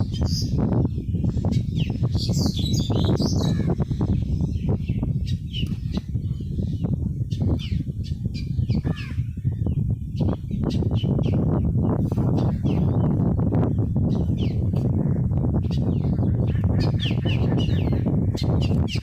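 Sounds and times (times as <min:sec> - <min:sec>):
birds chirping: 0:00.0 - 0:19.0.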